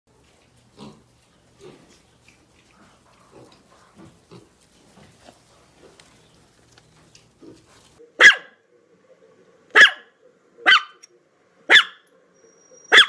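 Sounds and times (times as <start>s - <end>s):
animal grunting: 0.5s - 8.0s.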